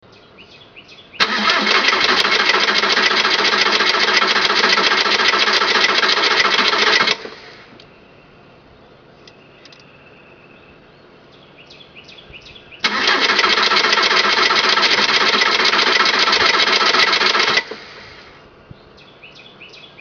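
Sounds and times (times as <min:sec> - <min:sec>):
engine starter cranking: 0:01.2 - 0:07.5, 0:12.8 - 0:18.3.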